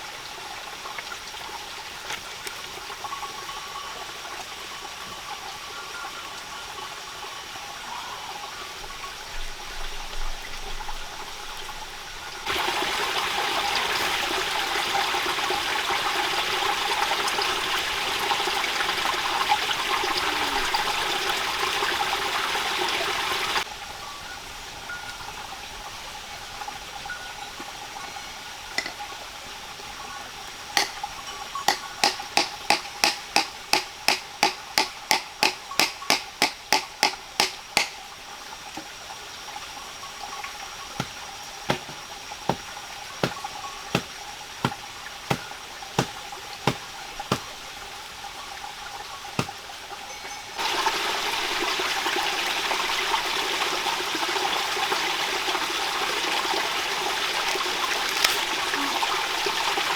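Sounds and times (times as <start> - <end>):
rain-like water noise: 0.0 - 59.9
sharp knocks: 31.7 - 38.0, 41.0 - 47.5, 49.4 - 49.6.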